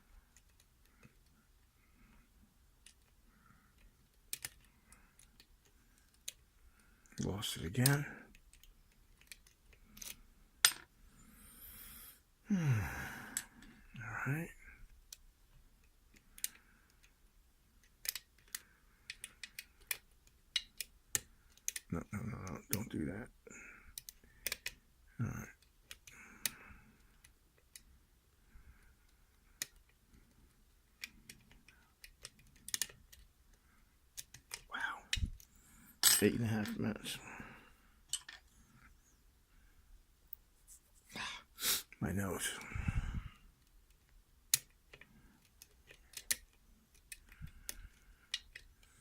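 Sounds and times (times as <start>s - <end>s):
lock-picking tools clicking: 3.8s - 6.4s, 7.8s - 10.2s, 17.8s - 21.9s, 23.9s - 24.8s, 29.5s - 33.3s, 34.1s - 35.3s, 38.1s - 38.6s, 43.6s - 48.9s
breathy exhale: 11.3s - 13.6s
person groaning: 12.5s - 13.4s.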